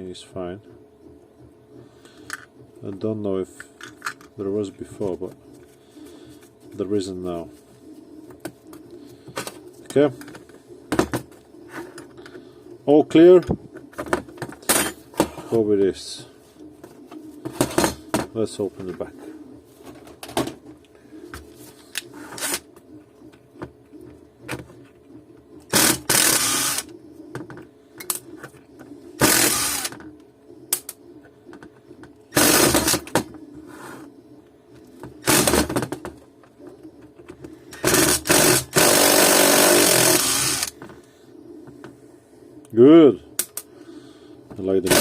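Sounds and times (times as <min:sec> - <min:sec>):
impact driver bursts: 0:25.7 - 0:26.9, 0:29.2 - 0:29.9, 0:32.3 - 0:33.1, 0:35.2 - 0:35.7, 0:37.8 - 0:40.7.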